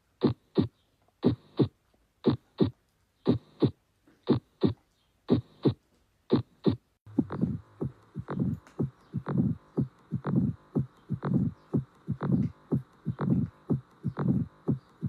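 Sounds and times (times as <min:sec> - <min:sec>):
heartbeat through stethoscope: 0:00.2 - 0:15.0
steady hum: 0:04.3 - 0:15.0.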